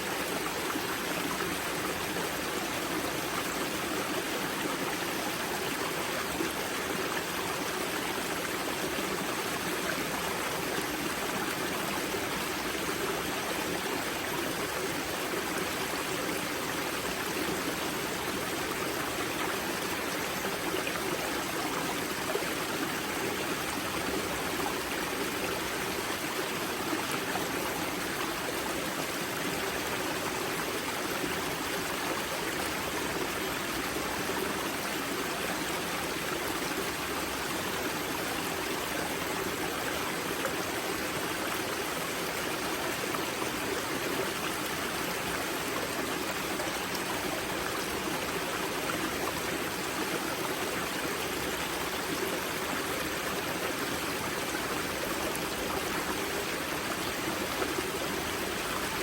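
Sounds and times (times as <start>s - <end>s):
stream water rushing: 0.0s - 59.0s.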